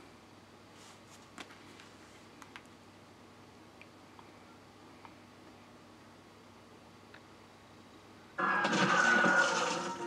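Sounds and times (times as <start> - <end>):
loud cartoon soundtrack: 8.4 - 10.0.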